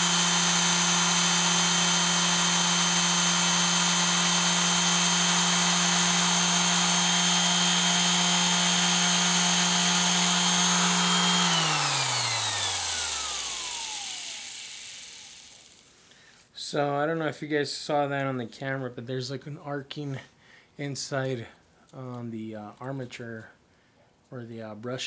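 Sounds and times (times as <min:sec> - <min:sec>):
sander motor whining: 0:00.0 - 0:16.0.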